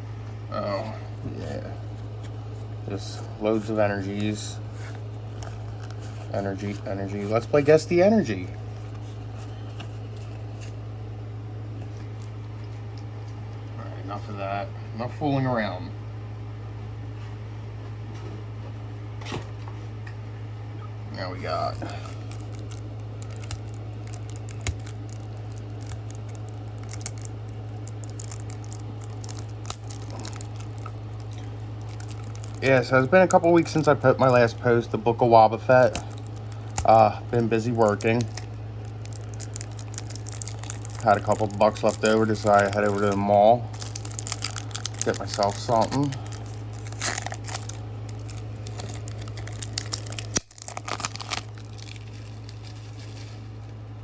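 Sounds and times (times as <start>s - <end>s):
steady low hum: 0.0s - 54.0s
plastic wrapping crinkling and tearing: 1.5s - 10.8s, 21.4s - 53.8s
trading cards and packaging clicking: 21.6s - 34.6s, 35.7s - 53.8s.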